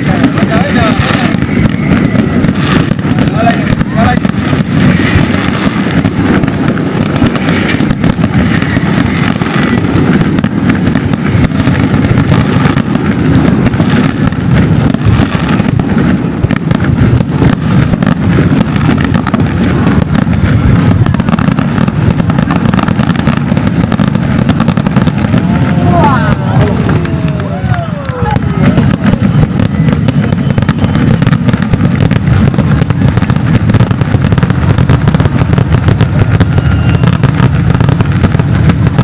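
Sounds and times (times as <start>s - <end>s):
fireworks bangs and crackles: 0.0s - 39.0s.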